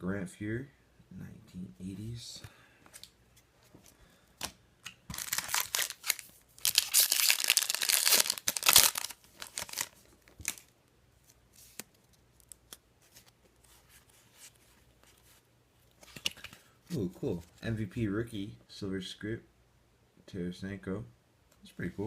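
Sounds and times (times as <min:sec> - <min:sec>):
cards rustling and clicking: 0:02.8 - 0:17.6
card pack wrapper tearing: 0:05.1 - 0:10.7.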